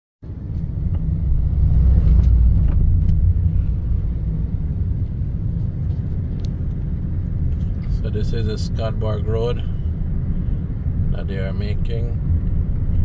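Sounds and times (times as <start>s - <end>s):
road traffic rumble: 0.2s - 13.0s.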